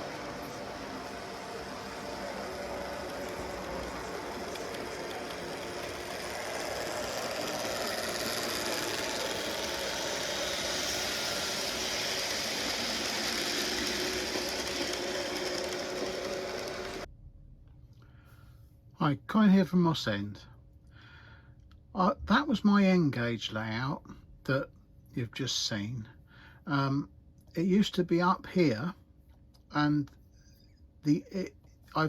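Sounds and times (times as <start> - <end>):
model train motor whirring: 0.0 - 17.1
wheels rumbling on track: 0.0 - 17.1.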